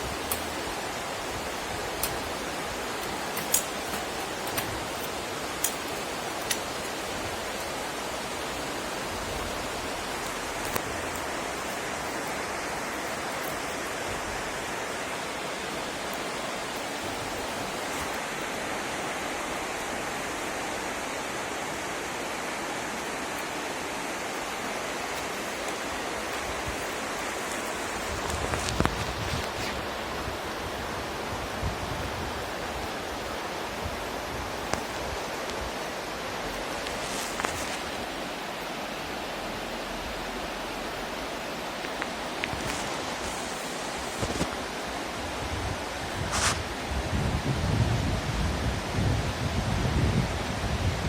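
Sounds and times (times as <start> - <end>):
burning wood crackling pops: 0.0 - 7.8, 10.2 - 12.2
rushing of flames: 0.0 - 18.4, 41.8 - 48.0.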